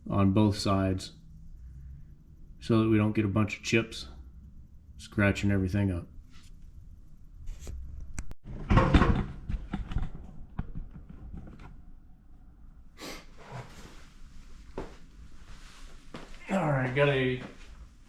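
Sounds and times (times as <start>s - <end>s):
loud clatter of knocks: 8.5s - 11.7s.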